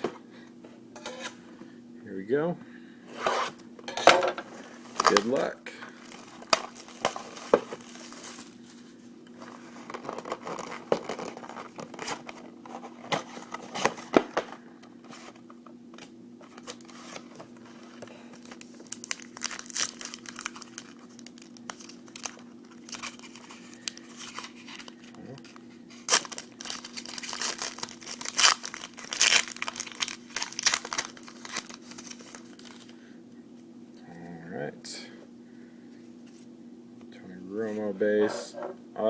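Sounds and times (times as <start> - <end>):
steady low hum: 0.0 - 39.0
plastic wrapping crinkling and tearing: 4.9 - 8.8, 9.4 - 14.1, 16.5 - 32.9.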